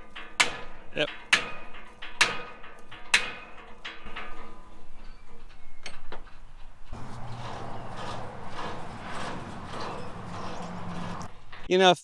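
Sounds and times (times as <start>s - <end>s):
steel parts knocking: 4.2s - 11.7s.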